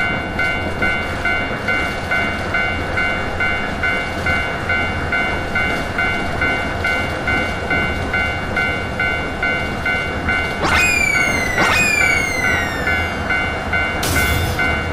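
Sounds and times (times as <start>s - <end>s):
level crossing warning bell: 0.0s - 14.9s
train passing rumble: 0.0s - 14.9s.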